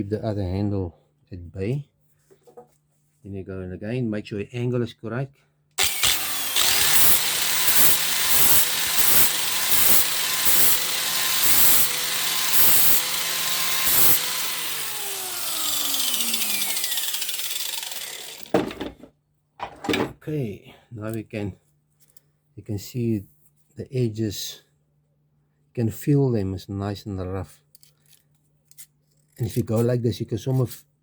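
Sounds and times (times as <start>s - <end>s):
grinding disc against metal blade: 5.8s - 18.5s
angle grinder motor whine: 5.8s - 18.8s.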